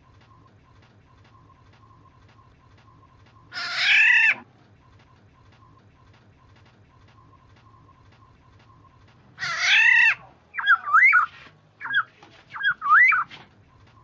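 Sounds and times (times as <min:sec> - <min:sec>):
bird fluty whistled phrases: 0:09.7 - 0:13.3.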